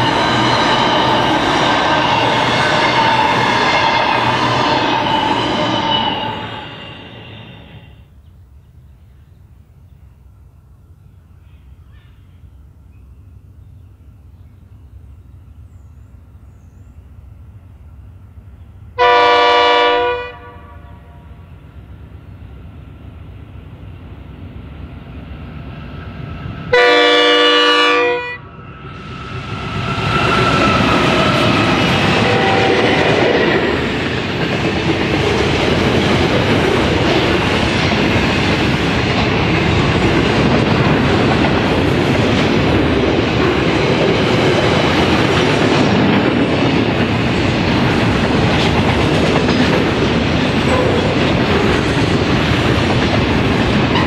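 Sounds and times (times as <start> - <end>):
locomotive horn blast: 0.0 - 6.8, 19.0 - 21.4, 26.7 - 28.5, 31.0 - 33.4, 50.7 - 51.2
locomotive engine passing: 0.0 - 8.2, 17.1 - 54.0
train wagons clickety-clack: 30.1 - 54.0.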